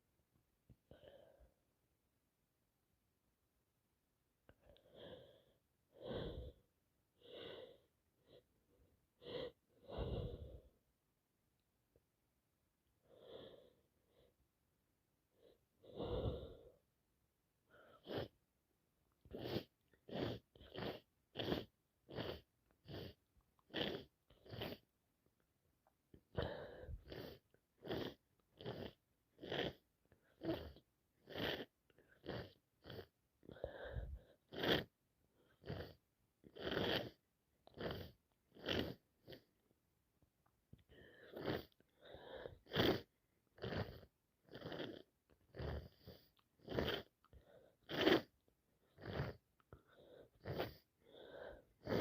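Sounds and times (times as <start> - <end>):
slow deep breaths: 0.8 - 1.6, 4.5 - 10.8, 13.0 - 14.4, 15.3 - 16.9, 26.3 - 27.6, 33.4 - 34.5, 40.8 - 42.7, 49.7 - 52.0
woman sniffing: 17.8 - 18.4, 19.3 - 24.8, 41.2 - 47.1, 47.8 - 48.3, 49.0 - 52.0.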